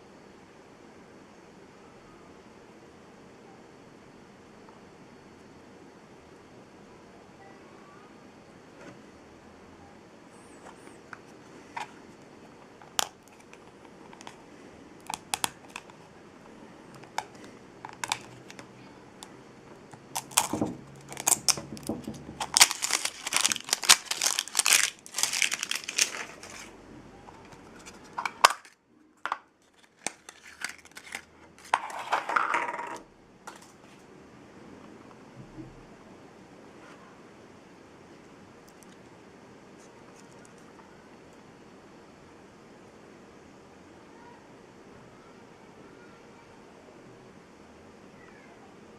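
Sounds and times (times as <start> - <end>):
wrapper crinkling and tearing: 15.0 - 16.0, 17.9 - 18.6, 20.1 - 26.7, 27.4 - 28.8, 29.6 - 32.0.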